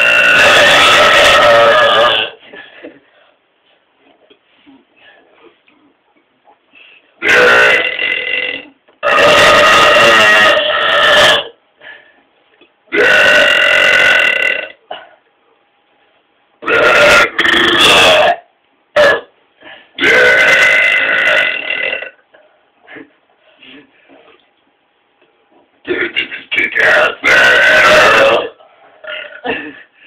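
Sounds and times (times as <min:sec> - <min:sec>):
men belching: 0:00.0 - 0:02.3, 0:07.2 - 0:11.5, 0:12.9 - 0:14.8, 0:16.6 - 0:18.4, 0:20.0 - 0:22.2, 0:25.9 - 0:29.8.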